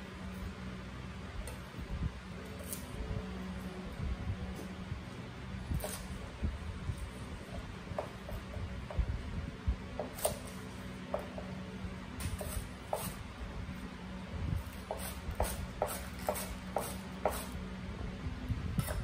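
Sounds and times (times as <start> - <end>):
low steady hum: 0.0 - 19.0
knife chopping on cutting board: 12.3 - 13.2, 14.8 - 17.5.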